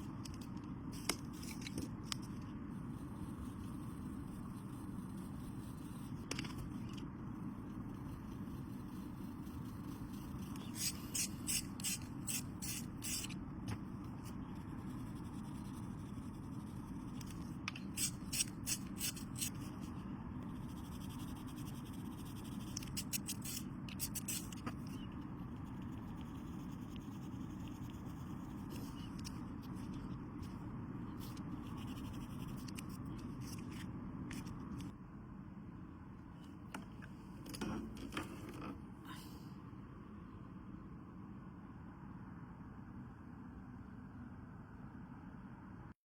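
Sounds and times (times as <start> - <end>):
steady low hum: 0.0 - 46.0
pencil scratching on paper: 1.0 - 34.5.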